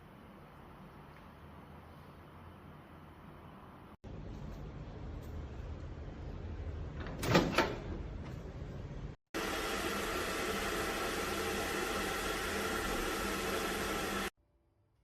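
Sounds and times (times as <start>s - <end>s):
microwave running hum and hiss: 5.4s - 14.3s.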